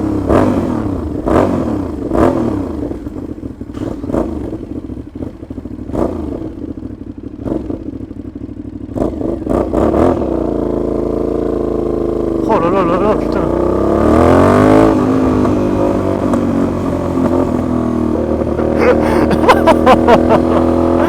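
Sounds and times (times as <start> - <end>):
motorcycle engine revving: 0.0 - 21.0
exhaust crackles: 12.4 - 21.0.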